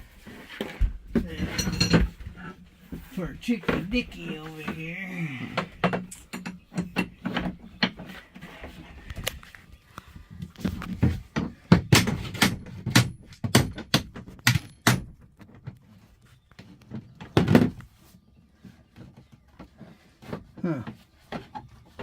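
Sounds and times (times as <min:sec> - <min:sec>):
hard knocks and thuds: 0:10.9 - 0:15.2.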